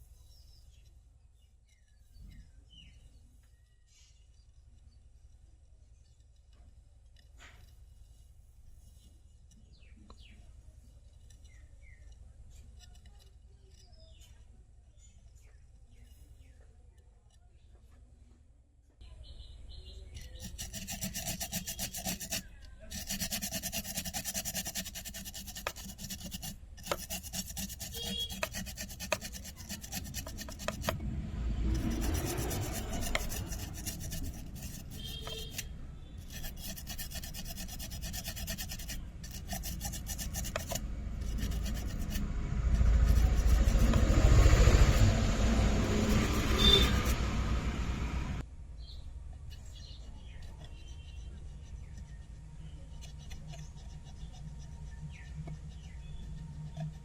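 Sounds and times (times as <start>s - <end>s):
small tool scraping circuit board: 11.0s - 14.4s, 20.0s - 47.6s, 48.8s - 57.0s
low rumble: 42.2s - 48.4s.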